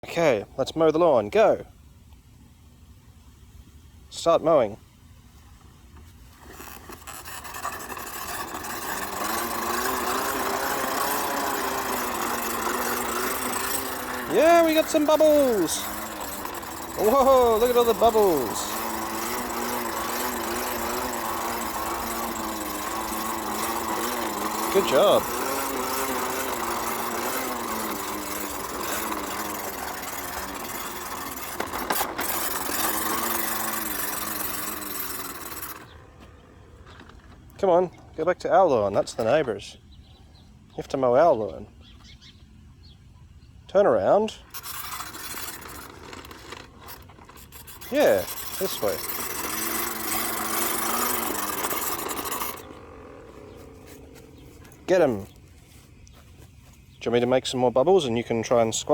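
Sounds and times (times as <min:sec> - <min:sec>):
toy battery motor whirring: 0:06.4 - 0:37.6, 0:44.2 - 0:55.8.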